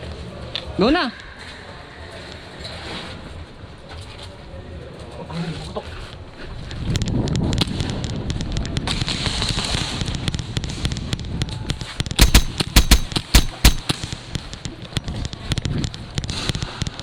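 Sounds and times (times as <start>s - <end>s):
faint pops and clicks: 12.1s - 13.9s
airsoft pistol shots: 12.2s - 14.0s.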